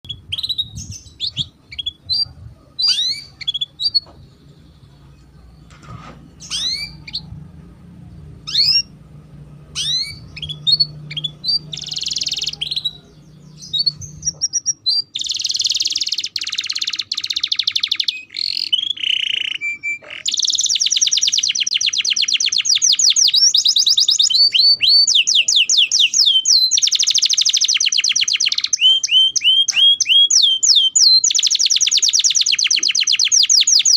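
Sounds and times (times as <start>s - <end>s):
canary singing: 0.0s - 33.9s
low hum: 3.4s - 14.5s.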